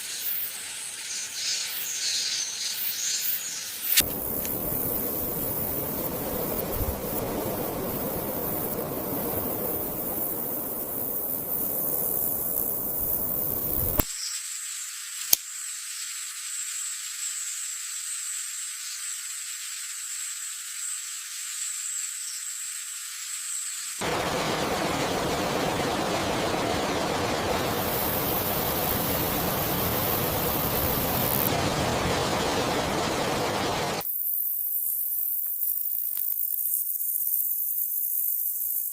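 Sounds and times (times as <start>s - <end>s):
rainforest rushing hiss: 0.0s - 38.9s
high-pitched whine: 24.0s - 34.0s.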